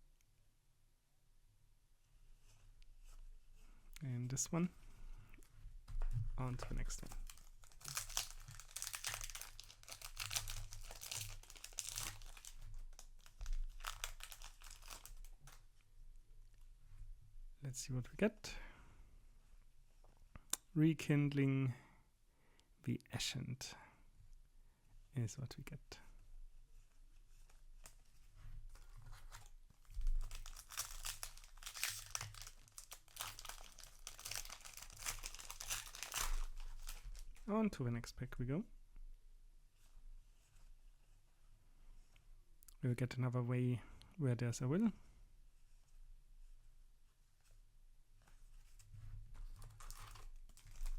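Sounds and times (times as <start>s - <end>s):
plastic foil pack crinkling: 6.8s - 15.6s, 28.7s - 37.5s, 49.5s - 50.9s.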